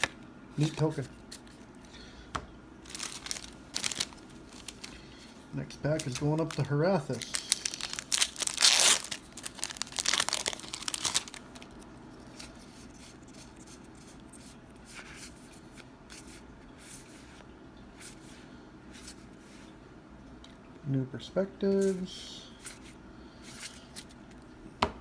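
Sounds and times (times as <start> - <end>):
foil wrapper tearing and crinkling: 2.9 - 5.1, 5.9 - 11.9.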